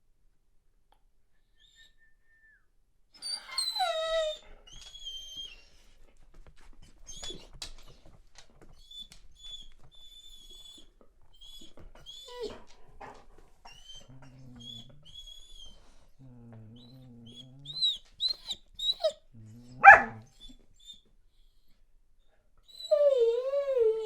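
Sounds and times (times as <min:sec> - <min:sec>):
dog whining and whimpering: 0:03.2 - 0:05.6, 0:08.8 - 0:21.0, 0:22.7 - 0:24.0.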